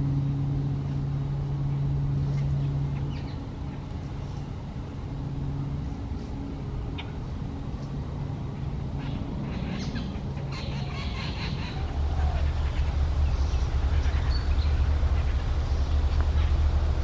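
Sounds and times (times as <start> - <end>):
low mechanical hum: 0.0 - 17.0
birds chattering: 0.9 - 4.8, 8.5 - 16.8.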